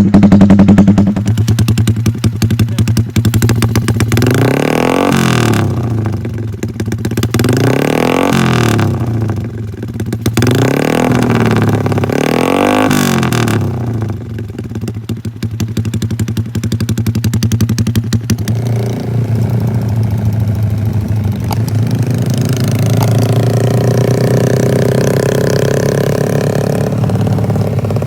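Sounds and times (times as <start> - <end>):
motorcycle engine revving: 0.0 - 28.0.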